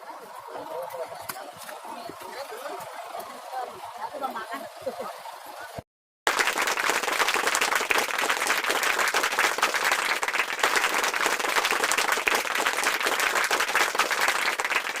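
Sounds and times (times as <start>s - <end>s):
crowd applauding: 6.3s - 15.0s.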